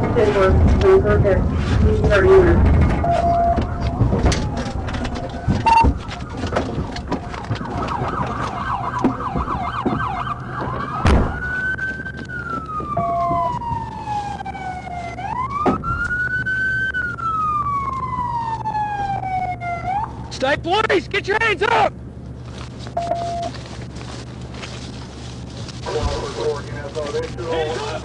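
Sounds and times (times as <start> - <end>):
road noise: 0.0 - 28.0
police siren yelp and wail: 2.2 - 21.9
heavy thump: 9.0 - 11.4.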